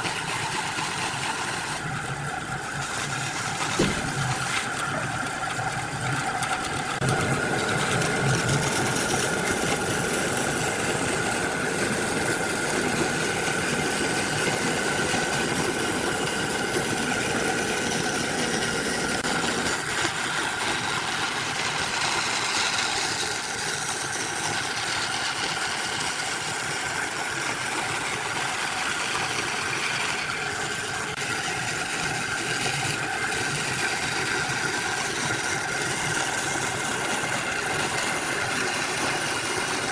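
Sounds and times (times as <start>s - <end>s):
machine motor whining: 0.0s - 20.7s.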